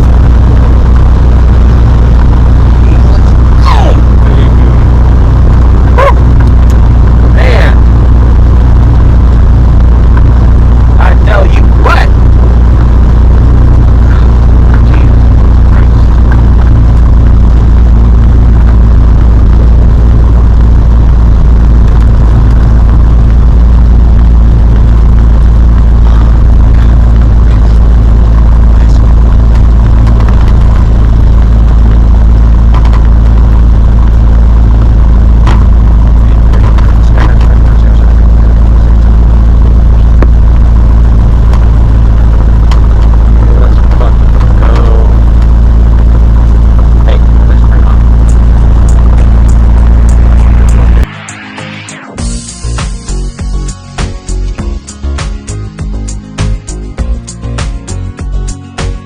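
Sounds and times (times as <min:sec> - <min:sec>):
airplane engine and propeller drone: 0:00.0 - 0:57.4.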